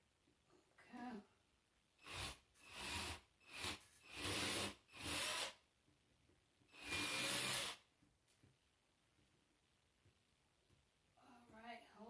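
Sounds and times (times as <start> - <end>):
cordless drill driving screws: 2.0 - 5.6, 6.7 - 7.8.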